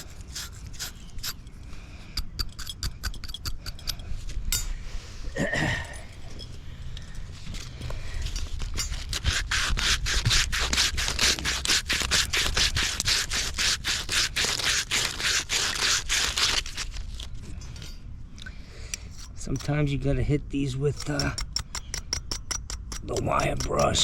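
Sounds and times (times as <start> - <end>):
wire brush scrubbing metal pipe: 0.0 - 1.5, 8.8 - 16.8, 20.9 - 24.0.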